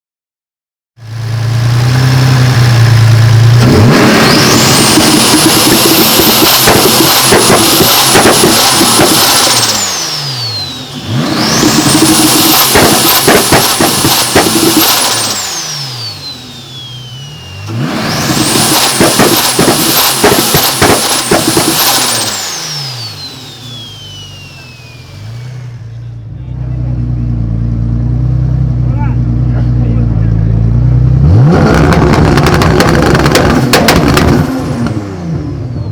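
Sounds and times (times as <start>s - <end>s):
car engine revving: 1.0s - 35.9s
turbo whistle: 4.1s - 26.2s
exhaust pops and bangs: 4.6s - 9.8s, 11.6s - 15.4s, 18.3s - 22.4s, 31.5s - 35.0s.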